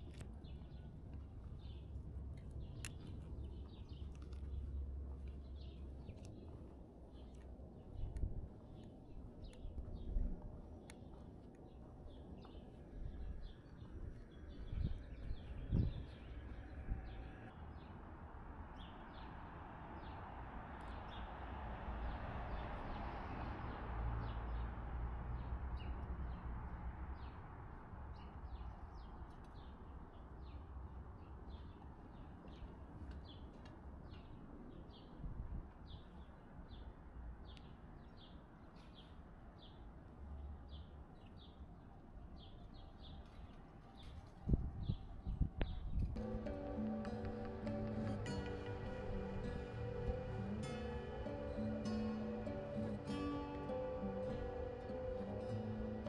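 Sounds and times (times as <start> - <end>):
small birds chirping: 42.4 - 56.0.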